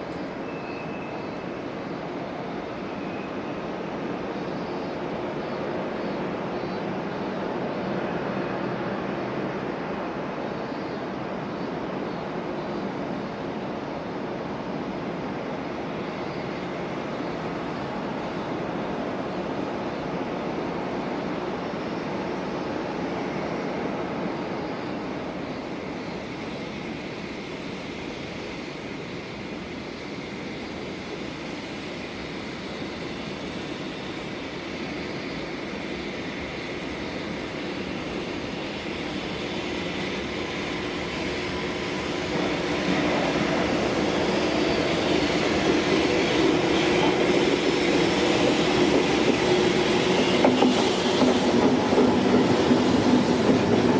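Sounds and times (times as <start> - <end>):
freight train rumbling: 0.0 - 53.9.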